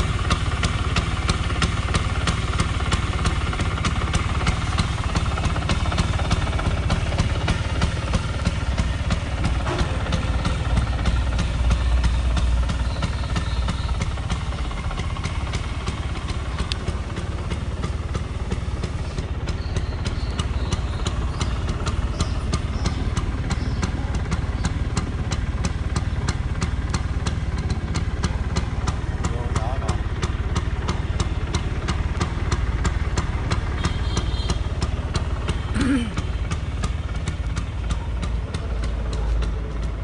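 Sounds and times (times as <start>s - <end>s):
scooter engine idling: 0.0s - 40.0s.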